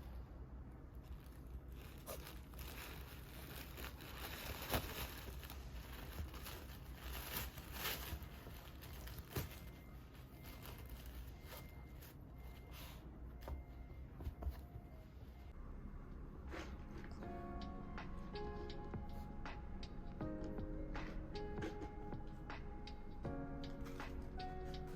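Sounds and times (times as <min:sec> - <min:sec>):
paper and plastic wrap tearing: 0:01.1 - 0:12.1.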